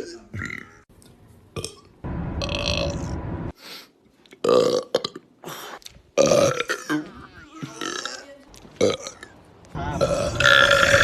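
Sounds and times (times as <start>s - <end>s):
men burping: 6.2s - 11.0s.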